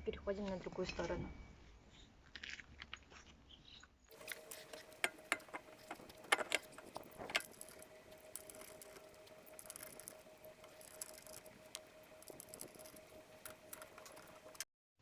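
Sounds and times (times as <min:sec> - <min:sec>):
faint steady hum: 0:04.1 - 0:14.7.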